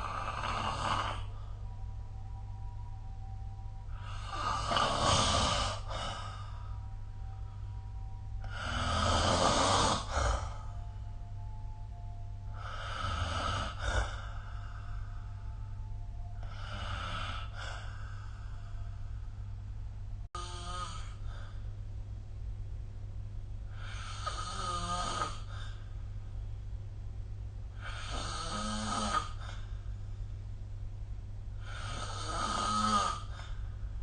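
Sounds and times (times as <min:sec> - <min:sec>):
person snoring: 0:00.0 - 0:01.6, 0:03.9 - 0:06.7, 0:08.4 - 0:10.8, 0:12.5 - 0:15.2, 0:16.4 - 0:19.0, 0:20.4 - 0:21.6, 0:23.7 - 0:25.8, 0:27.8 - 0:29.7, 0:31.6 - 0:33.7
steady low hum: 0:00.0 - 0:34.0.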